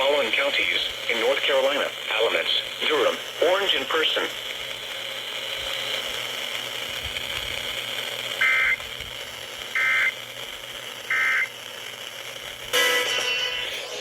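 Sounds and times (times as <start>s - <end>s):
radio hiss: 0.0s - 14.0s
loud noise: 0.6s - 14.0s
data tone bursts: 8.4s - 8.9s, 9.7s - 10.2s, 11.0s - 11.6s.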